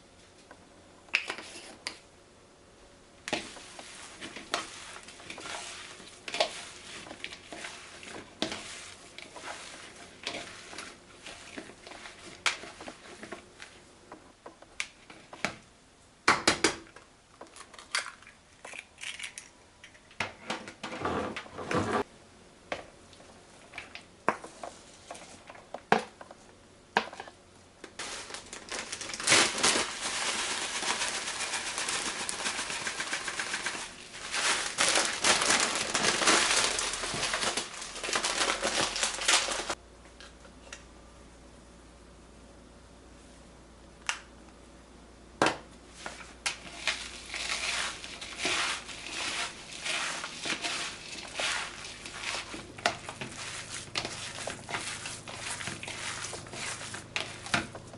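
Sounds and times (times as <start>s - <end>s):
crinkling: 28.0s - 39.8s, 46.0s - 57.9s.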